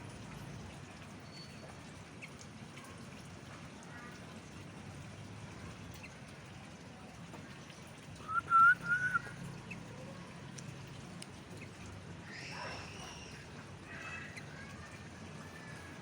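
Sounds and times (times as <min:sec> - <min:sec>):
person whistling: 0:08.3 - 0:09.3.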